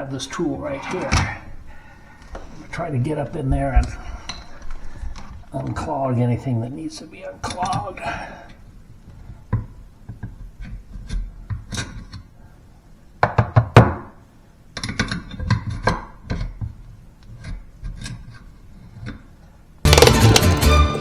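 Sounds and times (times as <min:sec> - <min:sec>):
tool knocking inside drain pipe: 0:19.9 - 0:20.8.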